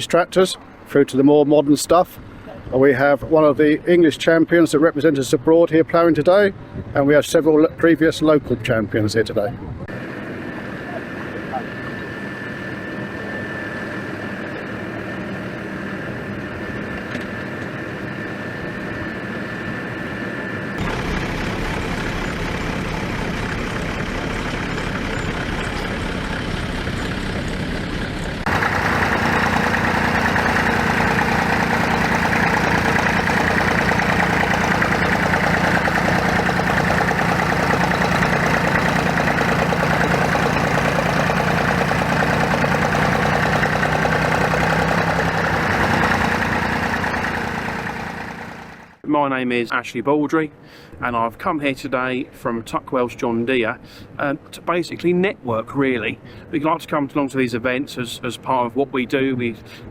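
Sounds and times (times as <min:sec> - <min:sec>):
steady low hum: 0:09.7 - 0:43.9
engines running: 0:09.8 - 0:49.0.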